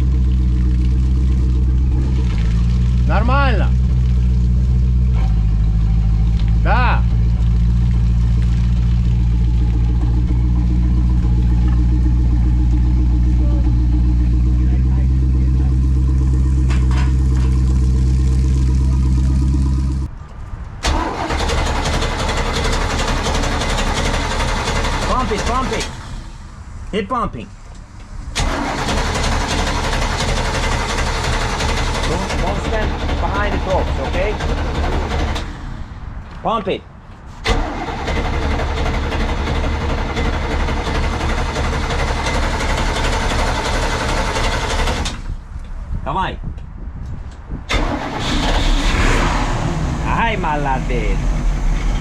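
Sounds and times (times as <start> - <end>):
boat engine running: 0.0 - 20.1, 28.4 - 35.7
rushing sound with low rumble: 0.0 - 52.0.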